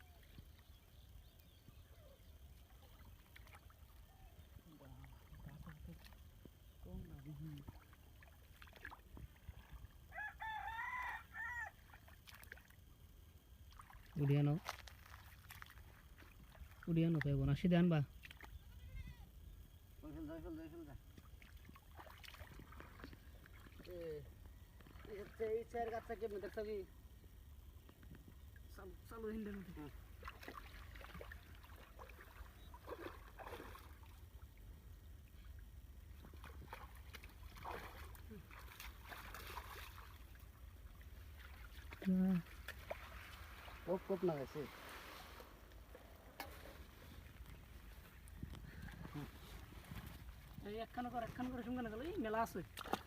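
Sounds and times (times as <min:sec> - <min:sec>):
pond water sloshing and trickling: 0:00.0 - 0:53.0
soft water splashes: 0:00.0 - 0:53.0
rooster crowing: 0:10.1 - 0:11.8.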